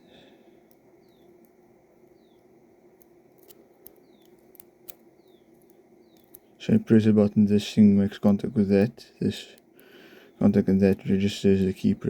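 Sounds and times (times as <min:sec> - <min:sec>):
low steady hum: 0:00.0 - 0:12.0
light clicks of small parts: 0:00.6 - 0:06.6.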